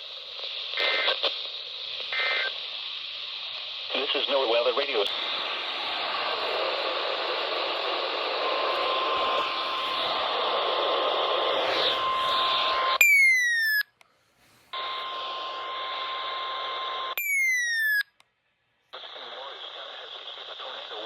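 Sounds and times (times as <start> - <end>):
radio static hiss: 0.0 - 13.0, 14.7 - 17.2, 19.0 - 21.0
falling electronic chirp: 11.5 - 14.0, 17.2 - 18.1.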